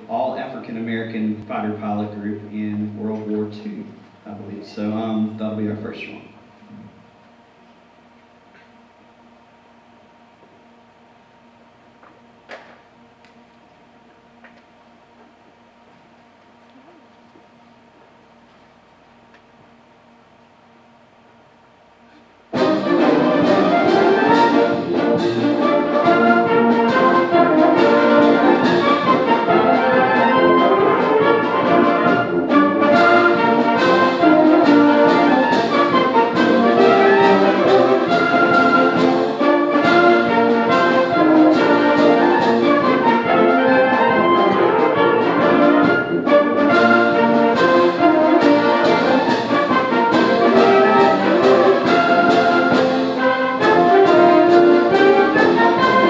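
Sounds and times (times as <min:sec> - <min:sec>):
symphonic band playing: 0:00.0 - 0:06.4, 0:22.5 - 0:56.0.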